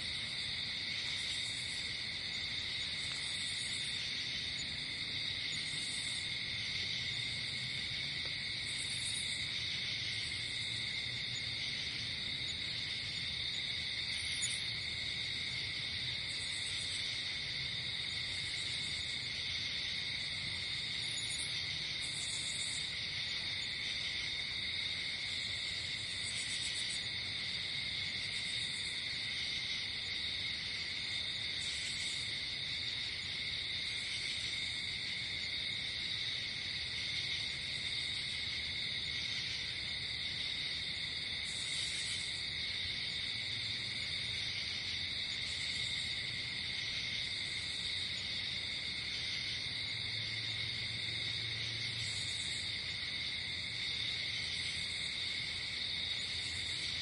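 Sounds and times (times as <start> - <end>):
chorus of night insects: 0.0 - 57.0.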